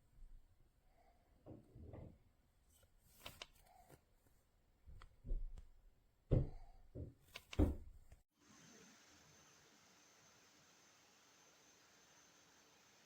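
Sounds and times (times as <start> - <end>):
faint steady hiss: 8.4 - 13.0.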